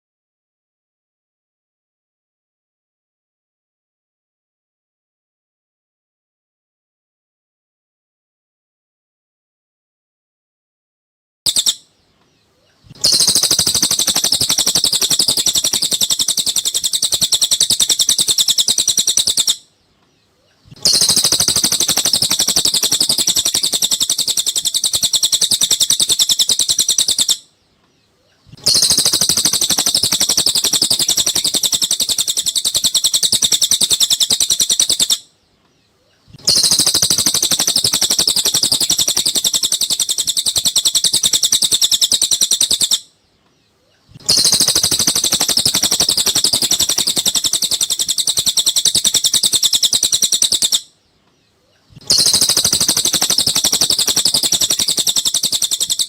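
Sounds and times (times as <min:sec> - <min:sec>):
high-pitched bird trills: 0:11.5 - 0:12.0, 0:12.9 - 0:19.7, 0:20.7 - 0:27.5, 0:28.4 - 0:35.3, 0:36.4 - 0:43.1, 0:44.2 - 0:51.0, 0:51.9 - 0:56.0.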